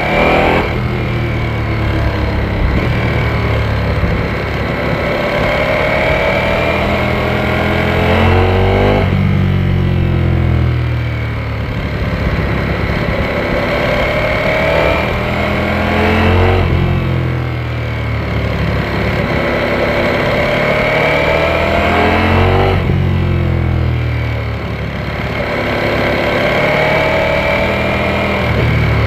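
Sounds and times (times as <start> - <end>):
gear change: 0.0 - 9.6
motorcycle engine pulling under load: 0.0 - 29.0.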